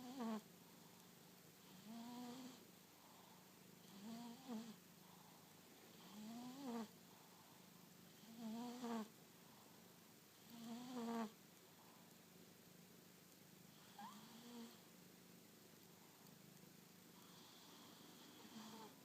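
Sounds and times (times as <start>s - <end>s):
cat snoring: 0.0s - 0.5s, 1.6s - 5.3s, 5.9s - 7.0s, 8.1s - 9.1s, 10.4s - 11.4s, 13.7s - 14.8s, 17.2s - 19.0s.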